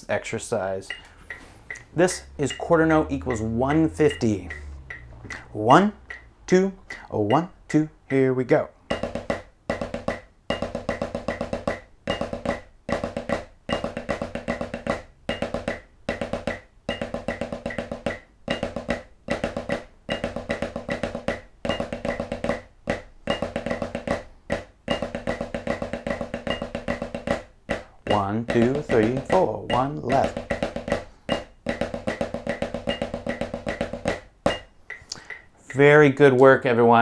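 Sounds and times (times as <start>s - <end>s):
snare drum played with sticks: 0.8s - 35.9s
metronome click: 0.9s - 5.4s, 6.0s - 8.3s, 28.1s - 30.3s, 34.6s - 35.8s.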